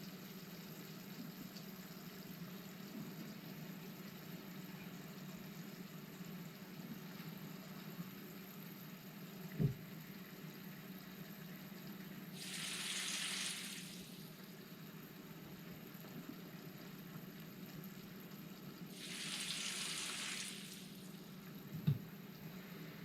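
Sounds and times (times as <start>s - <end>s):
faint steady hum: 0.0s - 23.0s
tap water running: 11.6s - 22.2s.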